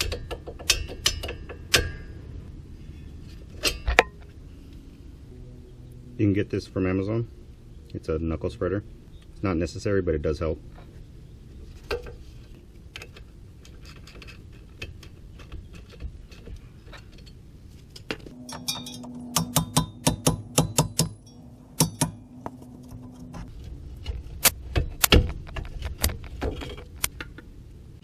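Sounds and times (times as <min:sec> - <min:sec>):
metal tool strikes and clanks: 0:00.0 - 0:02.2, 0:18.3 - 0:23.5
steady hum: 0:01.4 - 0:28.0.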